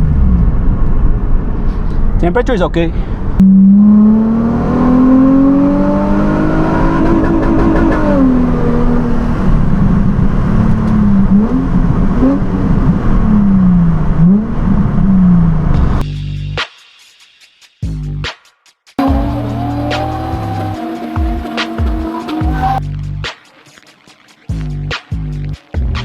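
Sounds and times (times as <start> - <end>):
car engine accelerating: 2.9 - 16.0, 19.0 - 22.8.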